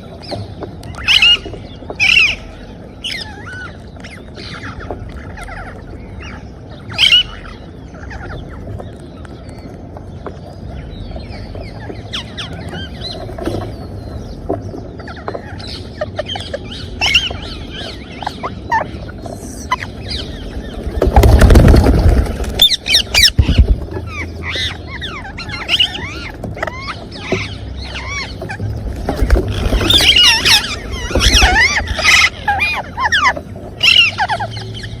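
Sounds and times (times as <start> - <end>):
parrots chirping and whistling: 0.0 - 9.7, 11.2 - 14.2, 14.9 - 35.0
wing-flapping: 20.1 - 24.4, 28.4 - 32.5.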